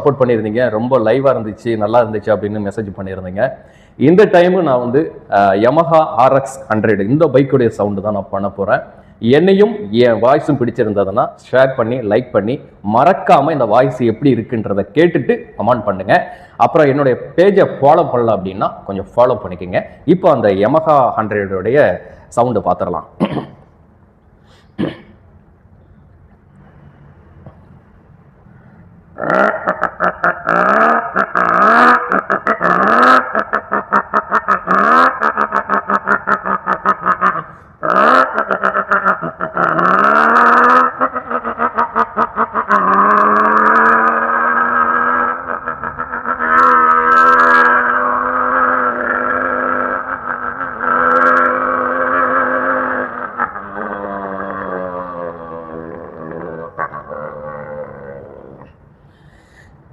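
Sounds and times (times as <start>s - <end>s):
man imitating motorcycle engine: 29.1s - 58.8s.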